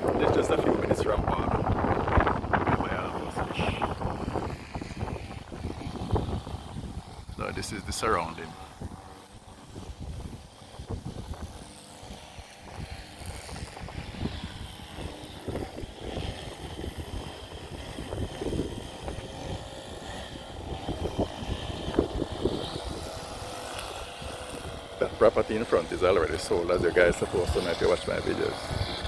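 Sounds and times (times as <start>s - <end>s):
wind buffeting microphone: 0.0s - 29.0s.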